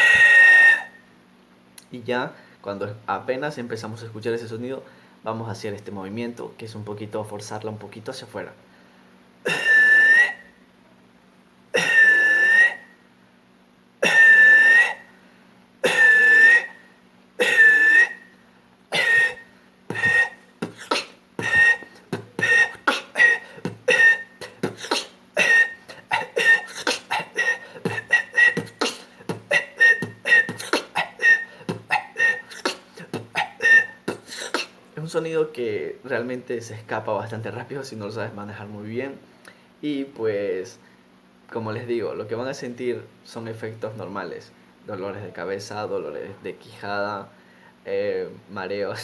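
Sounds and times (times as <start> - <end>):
beatbox cough whistle: 0.0 - 1.0, 9.4 - 10.6, 11.7 - 13.0, 14.0 - 15.1, 15.8 - 34.9.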